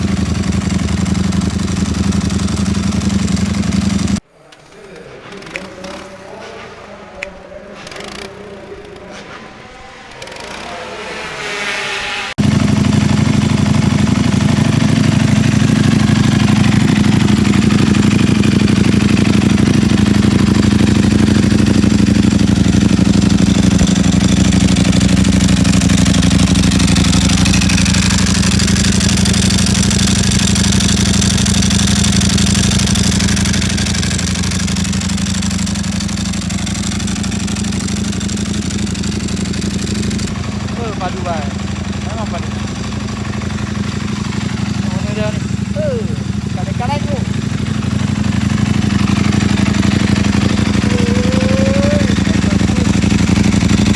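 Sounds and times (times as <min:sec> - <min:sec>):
motorcycle engine idling: 0:00.0 - 0:04.2, 0:12.4 - 0:53.9
starter whine: 0:00.0 - 0:04.2, 0:04.8 - 0:53.9.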